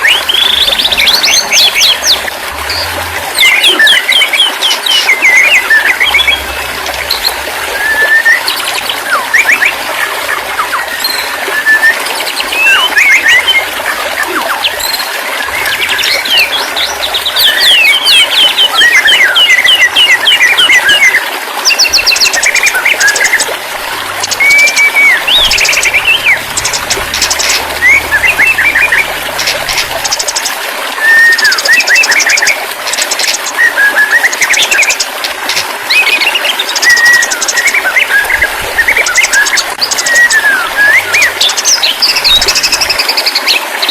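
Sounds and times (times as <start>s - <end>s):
songbirds singing: 0.0s - 43.9s.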